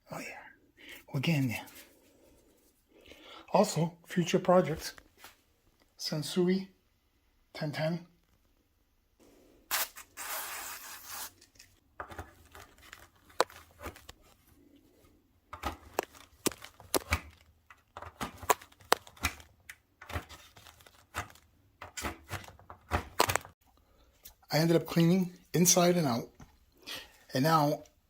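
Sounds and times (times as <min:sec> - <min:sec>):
ripping rustling noise: 0:09.7 - 0:14.4, 0:15.6 - 0:23.6.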